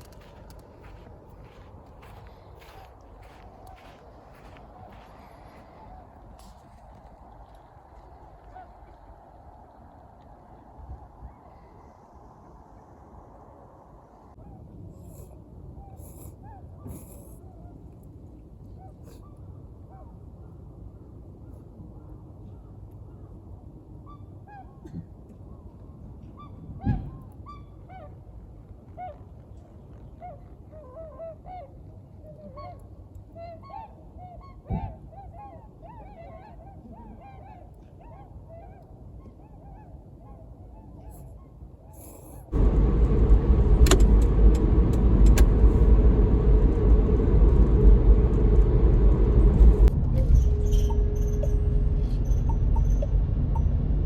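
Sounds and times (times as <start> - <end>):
car driving on road: 42.5 - 54.0.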